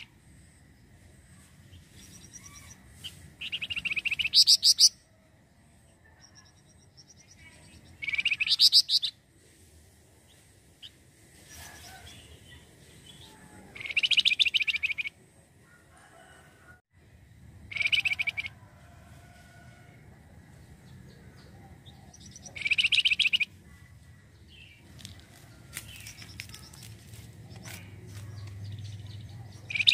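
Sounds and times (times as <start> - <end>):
bird trilling song: 2.0 - 5.0, 6.2 - 9.2, 10.8 - 15.2, 17.7 - 18.5, 21.1 - 23.6, 27.5 - 29.9.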